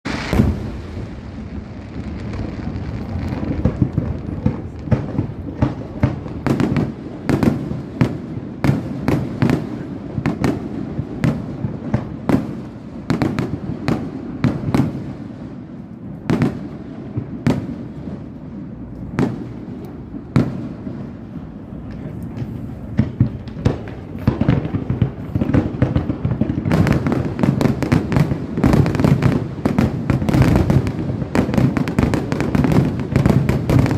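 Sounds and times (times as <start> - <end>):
continuous low rumble: 1.0 - 6.5, 18.0 - 26.6.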